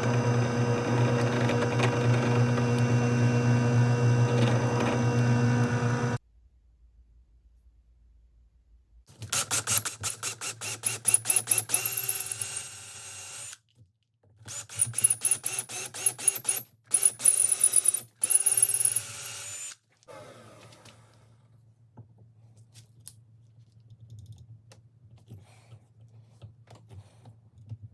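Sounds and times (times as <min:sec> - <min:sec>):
machine whine with ticking: 0:00.0 - 0:06.2.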